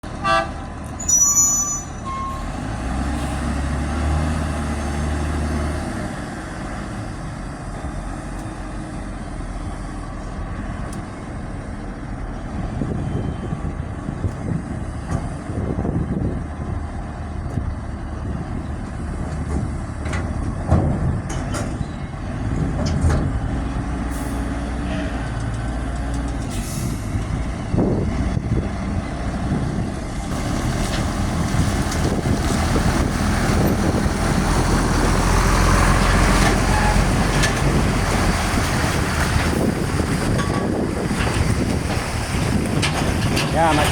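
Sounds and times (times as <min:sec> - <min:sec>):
reversing beeps: 0:01.0 - 0:02.5
heavy diesel engine running: 0:01.9 - 0:43.9.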